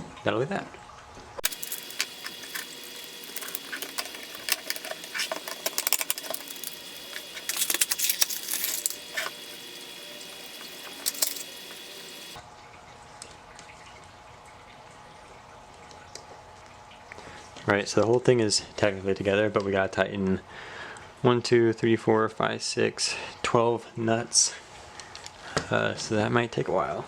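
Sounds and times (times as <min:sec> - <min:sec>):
plastic and metal parts rattling: 0:01.4 - 0:09.9.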